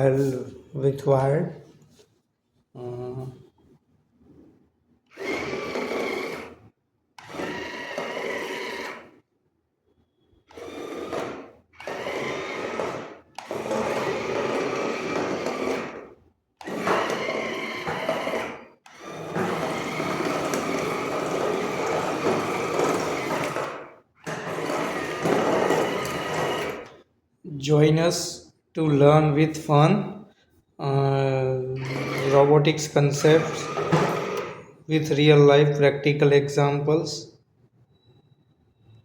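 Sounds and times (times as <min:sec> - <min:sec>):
toy car motors whirring: 0:05.1 - 0:09.2, 0:10.5 - 0:27.0, 0:31.8 - 0:32.5, 0:33.1 - 0:34.7.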